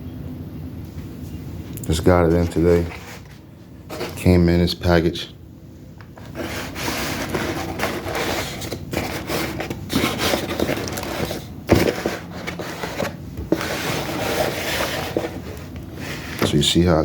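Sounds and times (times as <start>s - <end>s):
packaging rustling and scraping: 2.3s - 4.4s, 6.1s - 16.8s.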